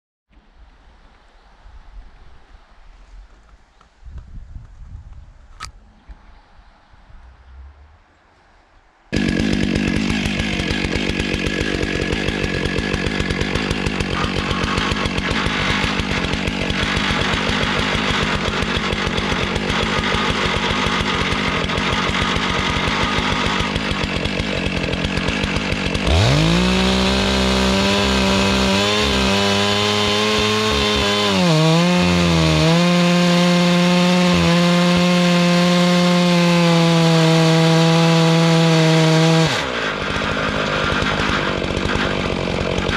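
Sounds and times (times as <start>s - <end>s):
chainsaw running: 9.1s - 42.9s.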